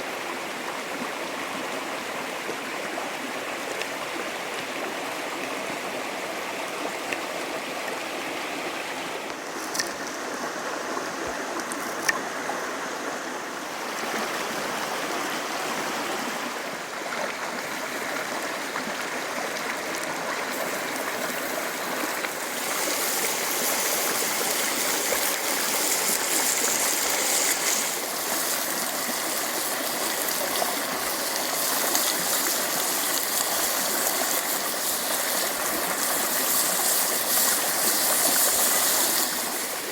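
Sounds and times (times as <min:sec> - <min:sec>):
creek water running: 0:00.0 - 0:39.9
bright hiss: 0:20.6 - 0:39.9.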